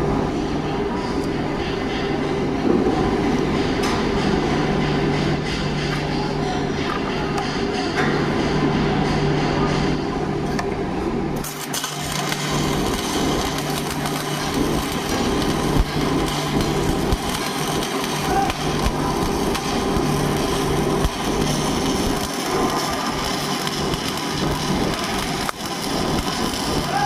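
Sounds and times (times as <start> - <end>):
welding arc crackling: 11.4 - 27.0.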